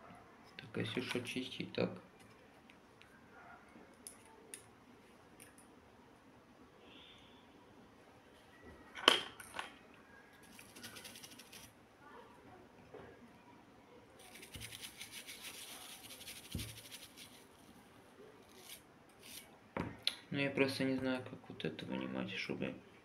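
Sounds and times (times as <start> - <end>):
toothbrush scrubbing plastic: 10.4 - 11.7, 14.2 - 17.6.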